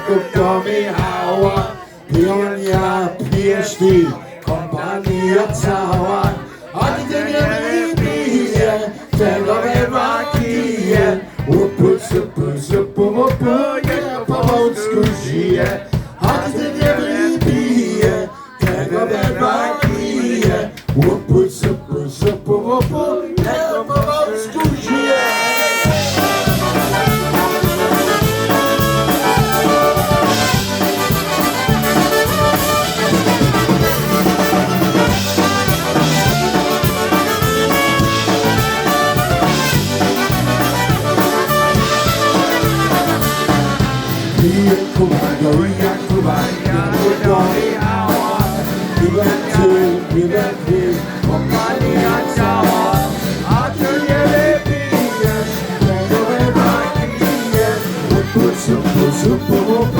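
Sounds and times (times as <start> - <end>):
polka band playing: 0.0 - 59.9
brass instruments: 24.6 - 59.9.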